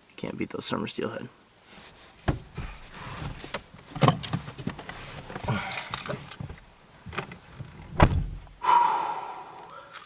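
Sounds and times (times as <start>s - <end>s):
heavy thump: 2.2s - 3.5s, 7.9s - 8.5s.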